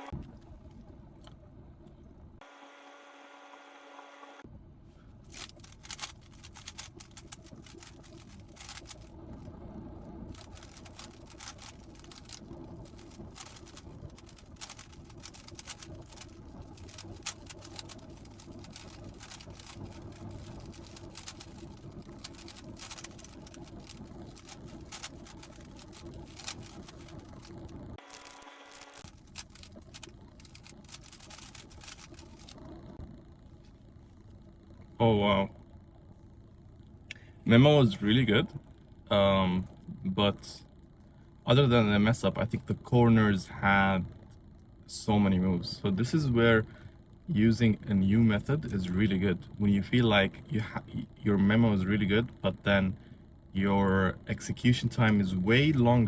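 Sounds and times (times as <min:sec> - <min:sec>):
speedcube plastic clicking: 0:05.3 - 0:09.1, 0:10.4 - 0:27.7, 0:29.0 - 0:32.6.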